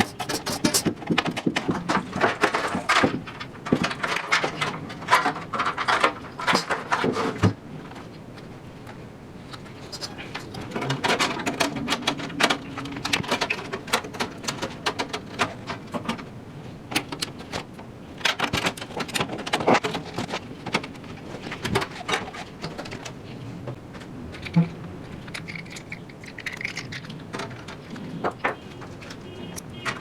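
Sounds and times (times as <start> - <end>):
computer parts clicking and tapping: 8.9 - 16.3, 16.9 - 23.2, 24.0 - 30.0.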